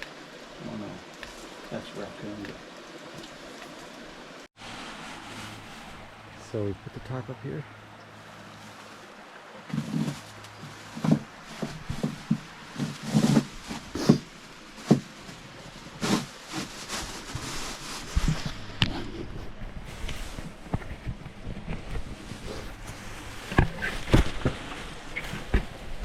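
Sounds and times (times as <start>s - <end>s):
camping gear rustling and knocking: 8.4s - 26.0s.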